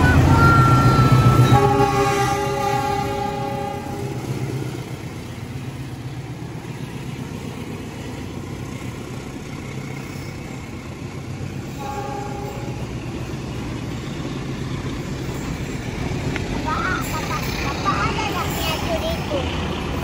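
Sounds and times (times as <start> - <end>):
locomotive horn blast: 0.0 - 4.5, 11.7 - 12.9
train rumbling by: 0.0 - 20.0.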